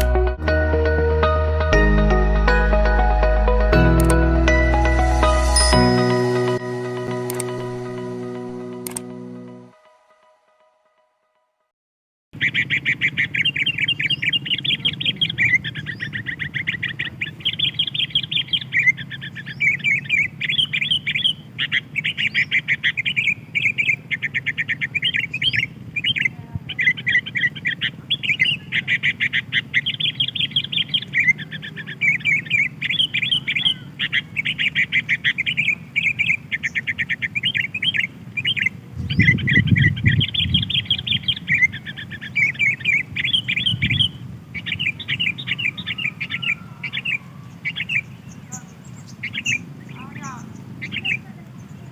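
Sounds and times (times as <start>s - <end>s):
bulbuls chirping: 12.4s - 51.9s
low rumble: 38.9s - 41.5s.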